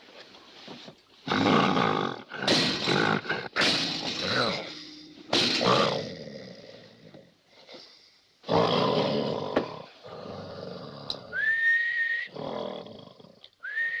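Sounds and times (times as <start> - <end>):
person whistling a rising note: 11.3 - 12.3, 13.7 - 14.0.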